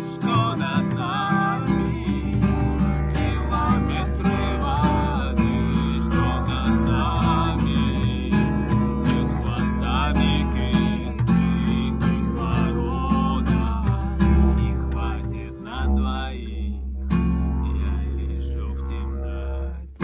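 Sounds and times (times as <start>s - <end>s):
acoustic guitar strumming: 0.0s - 20.0s
didgeridoo drone: 0.0s - 20.0s.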